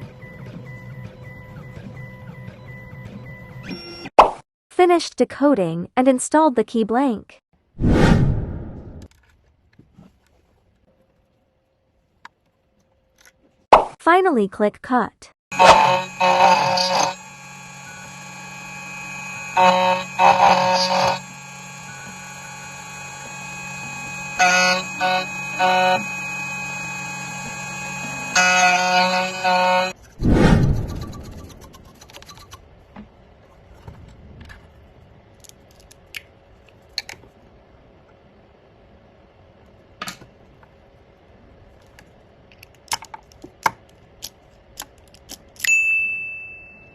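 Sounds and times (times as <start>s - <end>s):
cutter whining into metal: 15.5s - 30.0s
spindle motor humming: 15.5s - 30.1s.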